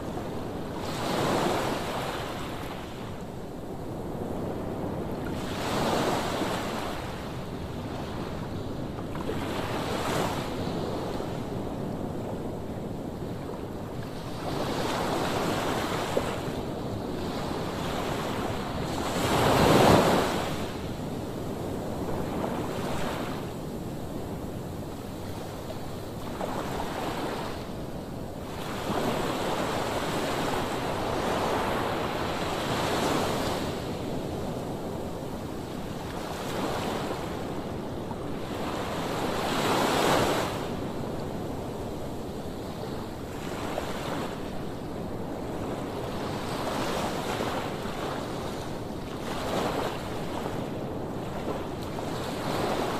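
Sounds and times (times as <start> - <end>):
sea waves breaking on shore: 14.1 - 27.7.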